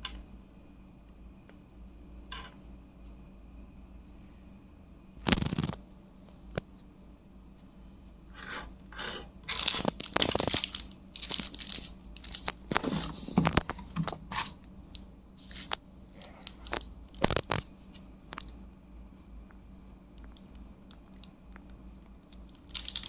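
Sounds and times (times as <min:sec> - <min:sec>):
packaging crinkling and tearing: 0:05.2 - 0:05.8, 0:09.5 - 0:14.6, 0:15.5 - 0:18.5, 0:22.4 - 0:23.0.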